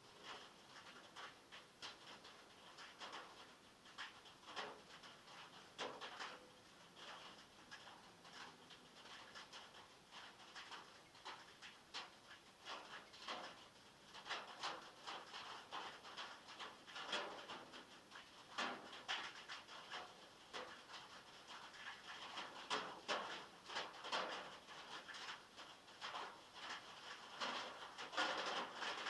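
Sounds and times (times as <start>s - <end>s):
heavy rain on a metal roof: 0.0s - 29.0s.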